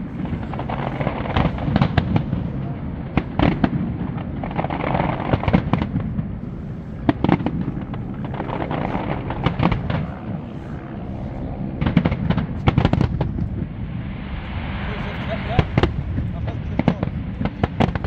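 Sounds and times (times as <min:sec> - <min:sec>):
low background rumble: 0:00.0 - 0:18.0
fireworks bangs and crackling: 0:00.1 - 0:06.3, 0:07.0 - 0:10.3, 0:11.8 - 0:13.7, 0:15.4 - 0:18.0.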